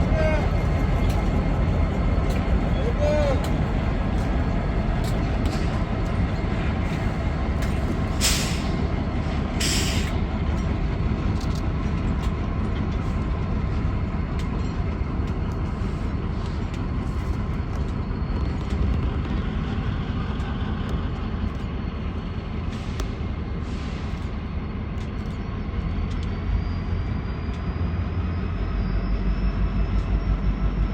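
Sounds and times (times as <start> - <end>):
train rumbling by: 0.0 - 30.9
air hissing: 8.1 - 8.8, 9.6 - 10.2.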